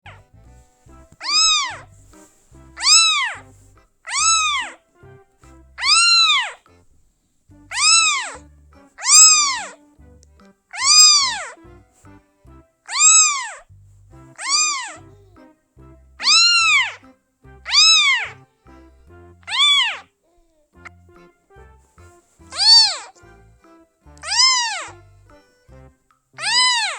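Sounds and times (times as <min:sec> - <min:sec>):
kitten meowing: 0:01.2 - 0:03.4, 0:04.1 - 0:04.8, 0:05.8 - 0:06.6, 0:07.7 - 0:08.4, 0:09.0 - 0:09.8, 0:10.7 - 0:11.6, 0:12.9 - 0:13.6, 0:14.4 - 0:15.5, 0:16.2 - 0:17.1, 0:17.7 - 0:18.4, 0:19.4 - 0:21.3, 0:22.4 - 0:23.4, 0:24.2 - 0:25.4, 0:26.4 - 0:26.9.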